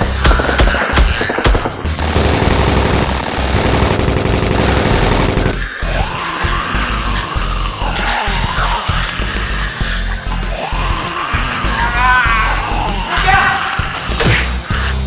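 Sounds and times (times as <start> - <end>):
background music: 0.0 - 15.0
machine-gun fire: 1.0 - 5.7.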